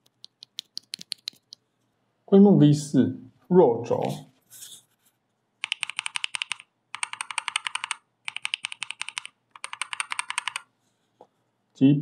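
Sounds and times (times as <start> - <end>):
typing on mechanical keyboard: 0.0 - 1.6, 5.6 - 10.7.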